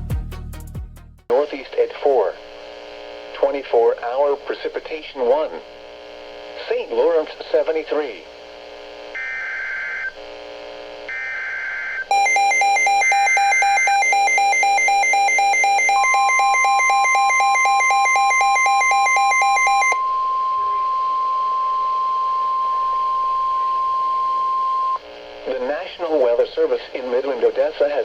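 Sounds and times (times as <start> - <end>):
rapidly pulsing alarm beep: 11.1 - 25.0
screechy digital header bursts: 11.1 - 25.0
steady single-pitch warning tone: 11.1 - 25.1.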